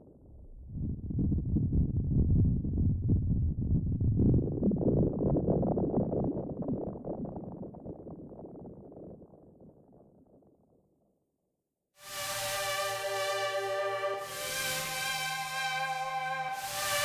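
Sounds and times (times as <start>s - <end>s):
low dense synthesizer sound: 12.0s - 17.0s.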